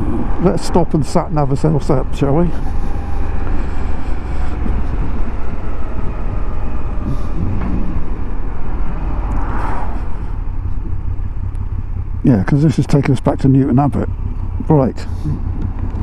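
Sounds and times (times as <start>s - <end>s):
motorcycle engine running: 0.0s - 16.0s
wind rumble on microphone: 2.5s - 12.3s.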